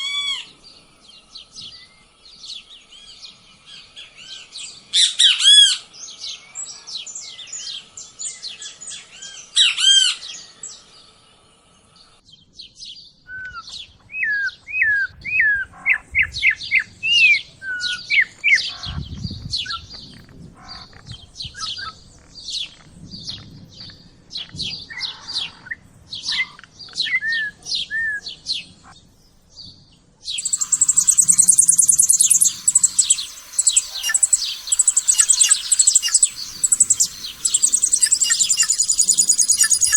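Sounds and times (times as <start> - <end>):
bird whistling: 30.3 - 39.9
songbirds singing: 30.3 - 39.9
rapid high buzzy trill: 30.4 - 39.9.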